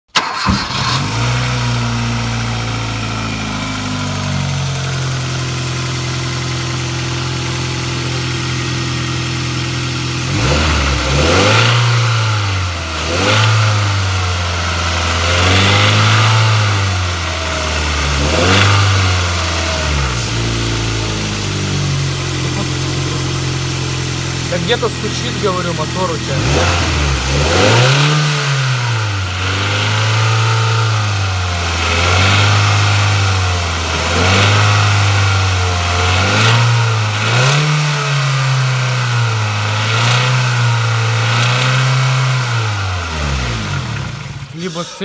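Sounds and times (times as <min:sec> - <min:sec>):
car engine idling and revving: 0:00.0 - 0:45.0
engine knock: 0:19.5 - 0:27.0.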